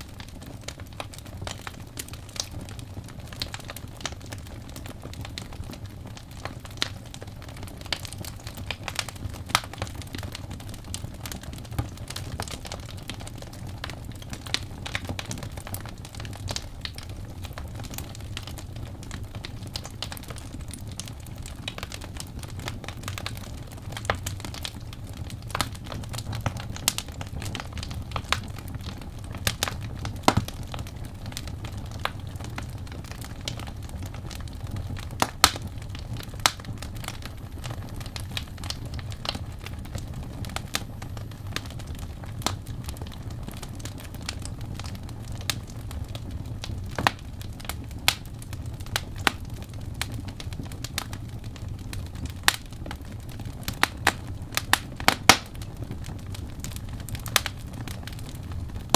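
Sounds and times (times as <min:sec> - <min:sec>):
wood fire crackling: 0:00.0 - 0:58.9.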